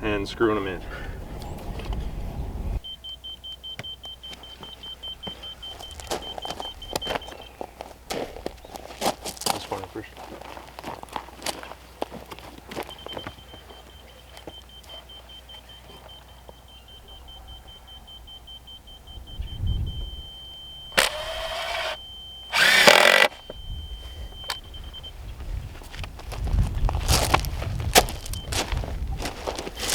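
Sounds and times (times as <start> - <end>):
laser receiver beeping: 12.9 - 25.1
power drill driving screws: 20.9 - 23.4.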